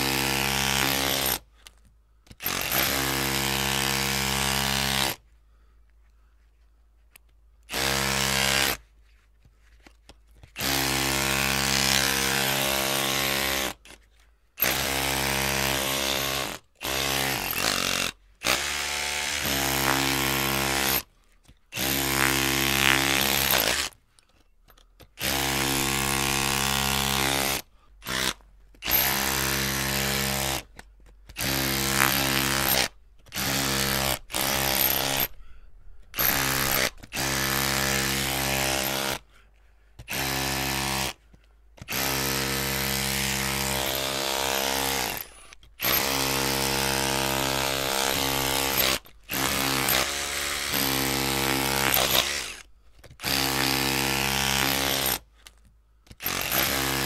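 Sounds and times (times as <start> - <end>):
electric drill motor running: 2.4 - 5.1, 25.2 - 30.6, 31.4 - 35.3, 36.2 - 39.2, 41.9 - 52.6, 56.2 - 57.0.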